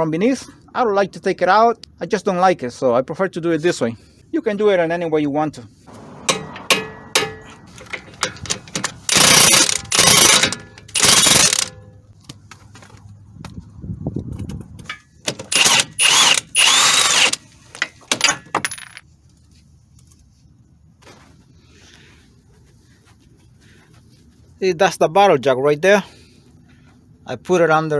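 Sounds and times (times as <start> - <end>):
tool hissing bursts: 15.5 - 17.4.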